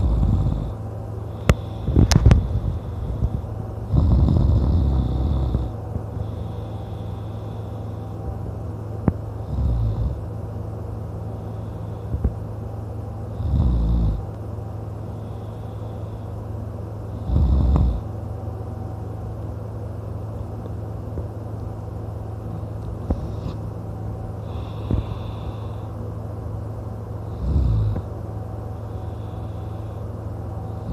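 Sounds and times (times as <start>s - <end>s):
man snoring loudly: 0.0s - 0.8s, 1.6s - 7.5s, 9.4s - 10.3s, 13.3s - 14.3s, 17.1s - 18.1s, 23.0s - 23.6s, 27.2s - 28.1s
soft breathing: 0.0s - 10.3s, 11.1s - 18.2s, 22.4s - 30.9s
steady low hum: 0.0s - 30.9s.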